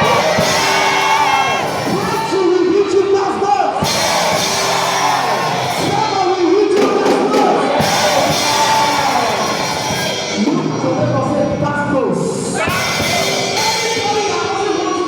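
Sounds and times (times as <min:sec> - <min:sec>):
congregation singing: 0:00.0 - 0:02.4, 0:03.8 - 0:10.4
person shouting: 0:00.0 - 0:02.4
instruments and drums: 0:00.0 - 0:15.0.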